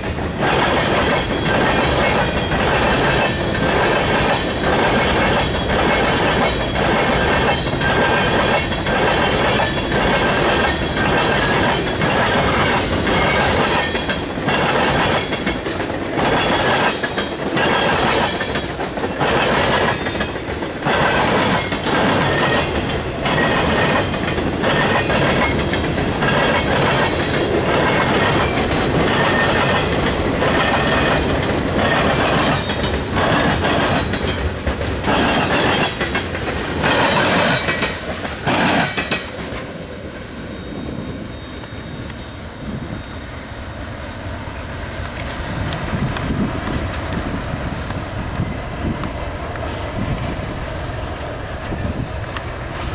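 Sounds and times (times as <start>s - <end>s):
train wheels clickety-clack: 0.0s - 52.9s
train wheels rumbling on rails: 0.0s - 52.9s
high wheel squeal: 40.3s - 44.0s.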